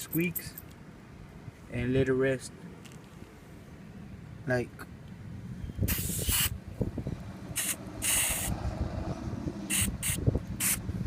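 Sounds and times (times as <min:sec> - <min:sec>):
aerosol can spraying: 0:05.9 - 0:06.5, 0:07.6 - 0:08.5, 0:09.7 - 0:10.8.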